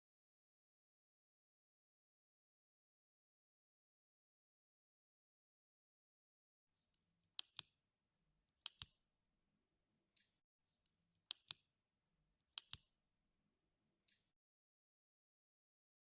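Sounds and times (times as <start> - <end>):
sharp mechanical clicks in pairs: 7.0 - 7.7, 8.7 - 8.9, 10.9 - 11.6, 12.6 - 12.8.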